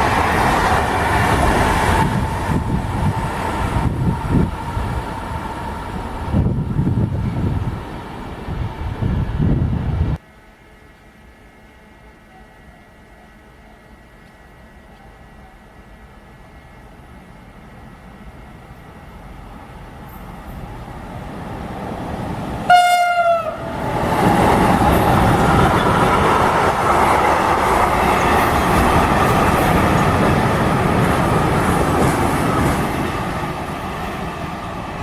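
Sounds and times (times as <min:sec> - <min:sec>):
train wheel and rail noise: 0:00.0 - 0:35.0
train horn blast: 0:22.7 - 0:23.8.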